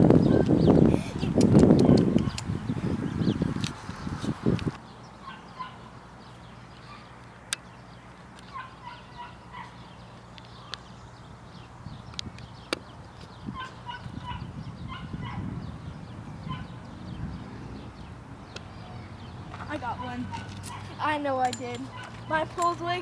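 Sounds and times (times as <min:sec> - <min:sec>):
bird calls: 0:00.0 - 0:23.0
sharp clicks: 0:01.4 - 0:02.5.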